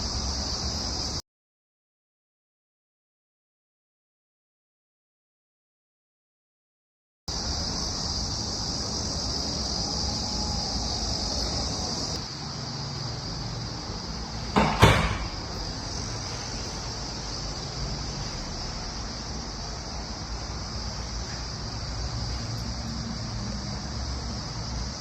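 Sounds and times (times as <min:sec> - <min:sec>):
constant hiss: 0:00.0 - 0:01.2, 0:07.3 - 0:25.0
short knock: 0:14.6 - 0:15.4.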